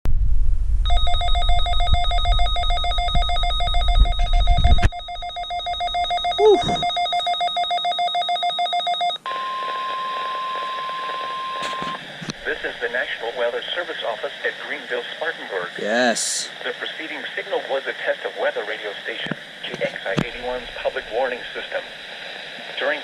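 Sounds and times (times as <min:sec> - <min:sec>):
alert alarm beeping trill: 0:00.9 - 0:12.0
steady warning alarm tone: 0:00.9 - 0:13.3
radio hiss: 0:09.3 - 0:23.0.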